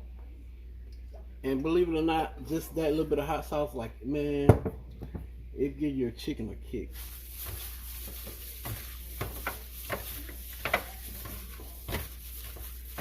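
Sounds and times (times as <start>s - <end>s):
wet squishes of chicken mixing: 6.9s - 13.0s.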